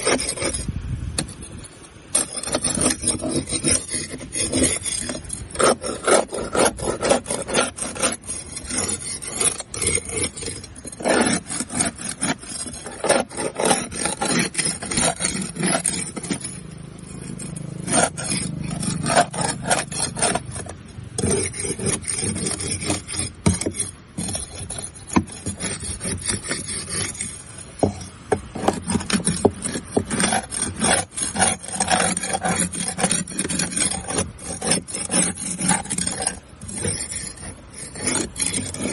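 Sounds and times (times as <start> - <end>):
barnacles scraped off boat hull: 0.0 - 38.9.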